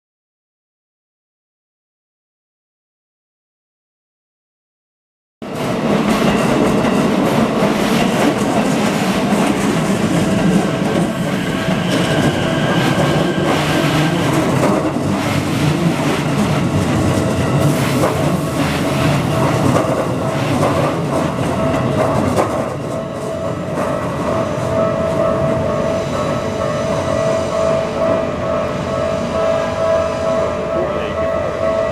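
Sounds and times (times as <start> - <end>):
train running noise: 5.4 - 31.9.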